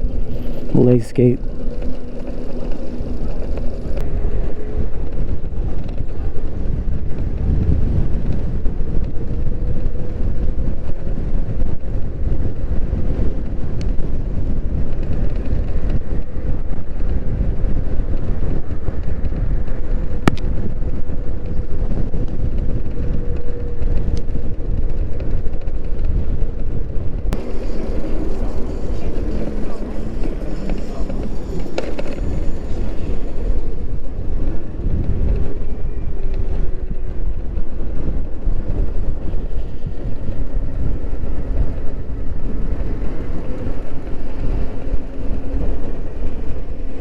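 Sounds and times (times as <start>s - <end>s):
road noise: 0.0s - 47.0s
wind rushing over microphone: 0.0s - 47.0s
faint steady whine: 27.2s - 47.0s.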